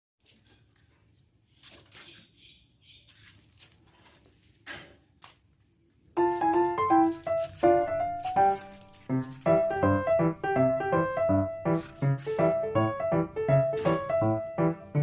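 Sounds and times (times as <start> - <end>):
faint rustling and scratching: 3.0 - 10.0
music with plucked notes: 6.2 - 15.0.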